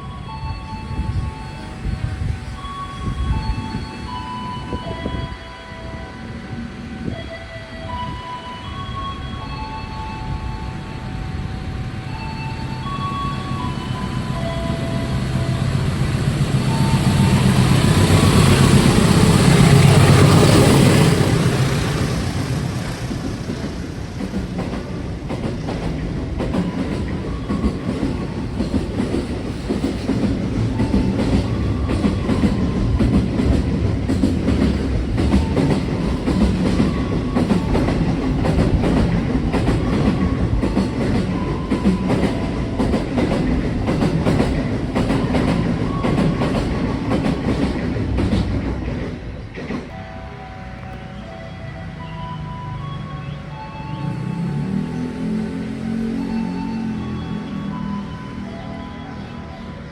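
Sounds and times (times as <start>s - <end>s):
train passing: 0.0s - 59.9s
wheels clacking over rail joints: 15.1s - 50.0s.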